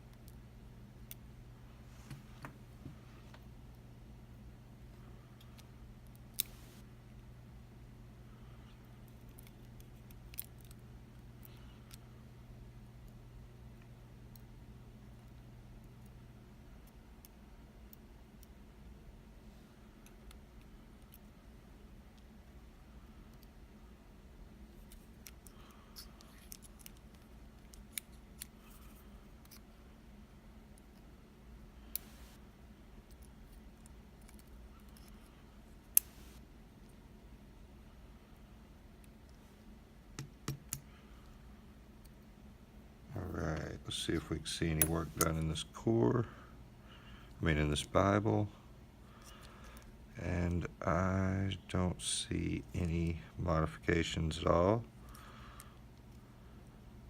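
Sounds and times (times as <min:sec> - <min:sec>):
steady low hum: 0:00.0 - 0:57.0
small clicks of lock parts: 0:09.0 - 0:12.0, 0:24.8 - 0:29.6, 0:33.0 - 0:35.3, 0:40.2 - 0:40.9
small metal lock parts clicking: 0:24.9 - 0:28.6.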